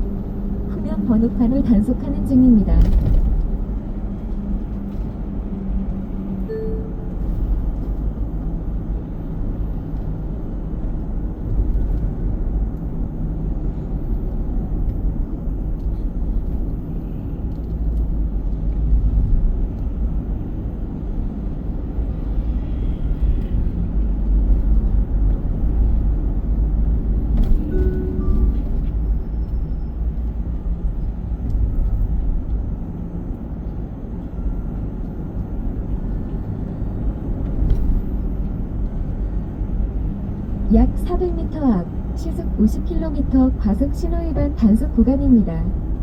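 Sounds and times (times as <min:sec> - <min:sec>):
car cabin road and engine rumble: 0:00.0 - 0:46.0.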